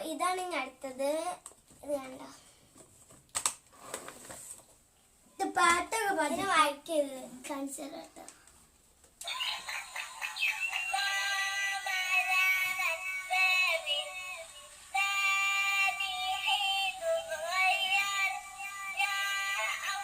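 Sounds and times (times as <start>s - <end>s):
tinny synthesized children's tune: 9.2s - 20.0s.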